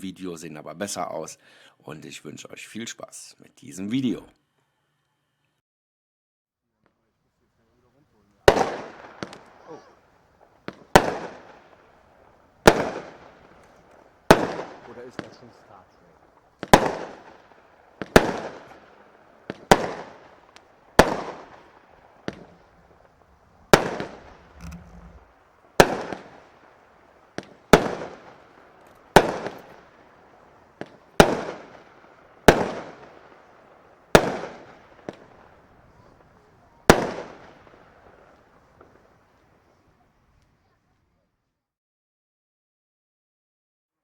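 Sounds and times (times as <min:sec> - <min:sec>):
firework bangs: 0:21.0 - 0:25.3.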